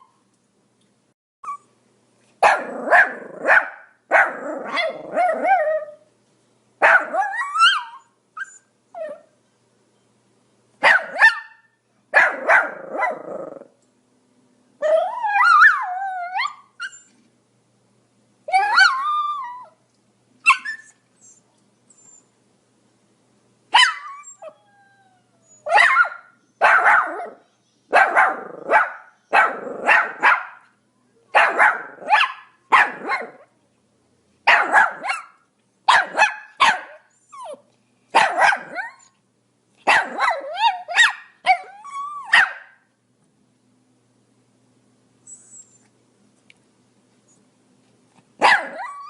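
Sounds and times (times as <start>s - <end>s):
small dog barking and yelping: 2.4s - 6.1s, 6.8s - 9.3s, 10.8s - 13.7s, 14.8s - 17.2s, 18.5s - 19.8s, 20.4s - 21.4s, 23.7s - 24.9s, 25.5s - 33.5s, 34.5s - 39.2s, 39.8s - 42.9s, 48.4s - 49.0s.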